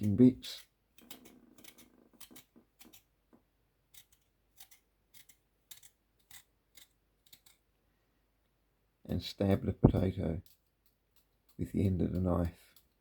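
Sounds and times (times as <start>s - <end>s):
knife cutting potato clicks: 0.0s - 3.1s, 3.9s - 7.6s, 10.4s - 13.0s.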